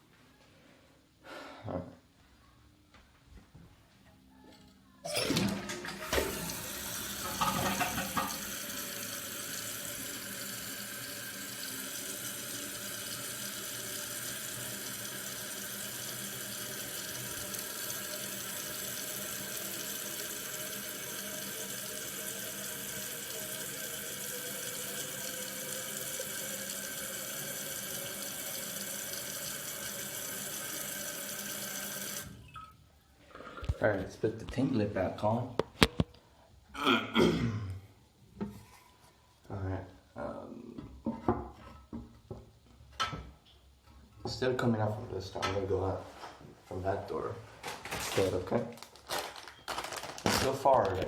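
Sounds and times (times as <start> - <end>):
fill valve hissing: 5.1 - 32.4
toilet flushing water rush: 5.1 - 32.4.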